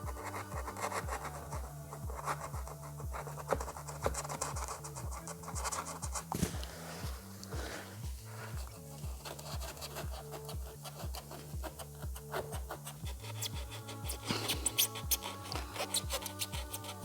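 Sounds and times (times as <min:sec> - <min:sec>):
music with bass beat: 0:00.0 - 0:17.0
blade scraping trim: 0:08.5 - 0:17.0.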